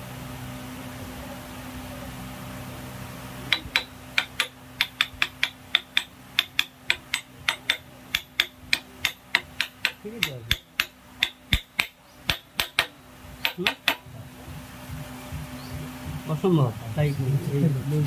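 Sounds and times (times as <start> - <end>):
steady low hum: 0.0 - 18.0
hammer tapping on metal: 3.5 - 14.1.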